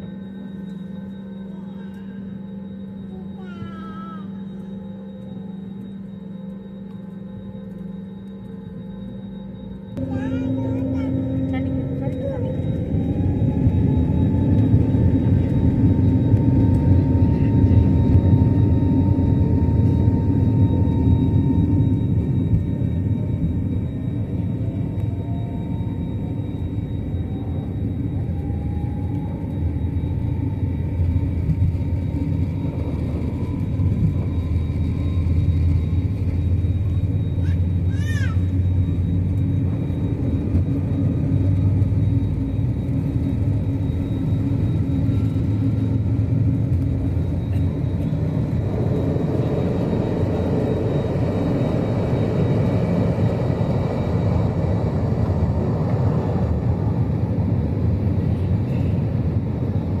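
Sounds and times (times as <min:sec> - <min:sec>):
brief high tone: 0:00.0 - 0:06.9, 0:08.8 - 0:29.1
jet engines rumbling: 0:00.0 - 1:00.0.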